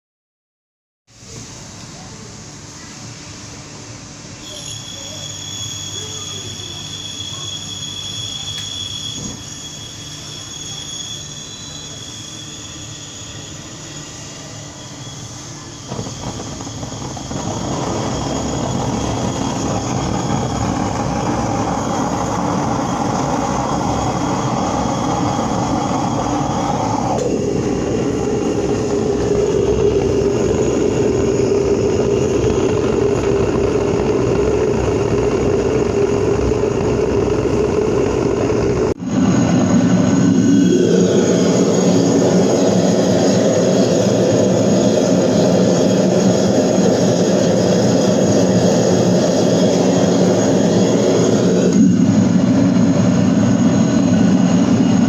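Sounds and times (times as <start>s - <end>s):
gas furnace burner roaring: 14.7s - 55.0s.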